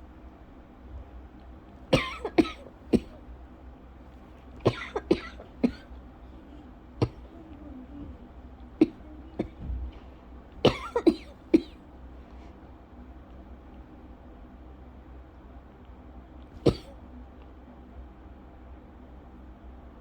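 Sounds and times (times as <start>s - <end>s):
woman coughing: 1.9s - 3.2s, 4.6s - 8.1s, 8.8s - 9.8s, 10.6s - 11.8s, 16.6s - 17.0s.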